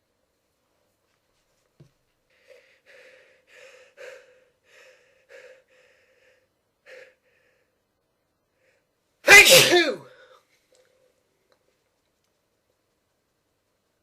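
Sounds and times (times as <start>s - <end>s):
person breathing quietly: 2.3s - 7.9s, 8.5s - 9.0s.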